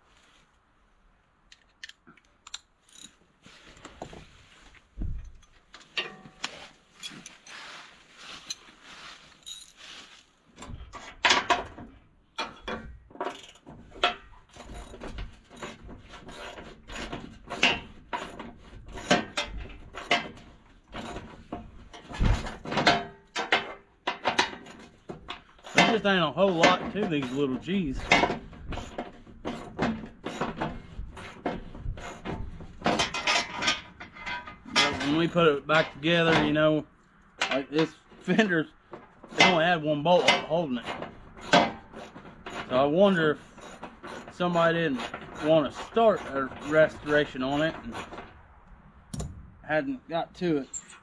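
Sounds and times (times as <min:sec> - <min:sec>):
hand tools clinking: 0:01.5 - 0:03.2, 0:05.3 - 0:07.7, 0:09.3 - 0:09.9
dull thuds: 0:04.0 - 0:05.4, 0:16.9 - 0:23.0, 0:49.1 - 0:49.7
loose metal knocking: 0:10.6 - 0:36.6, 0:37.4 - 0:48.4.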